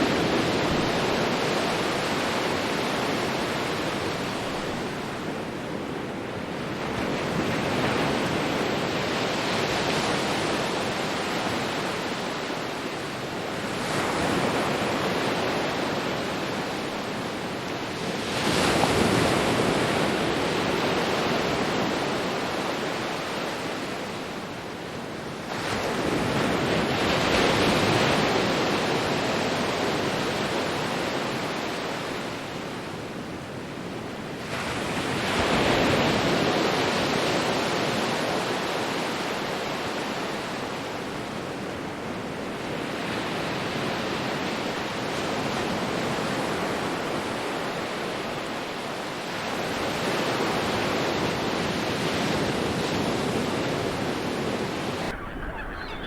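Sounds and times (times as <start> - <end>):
ocean waves breaking: 34.4 - 56.0.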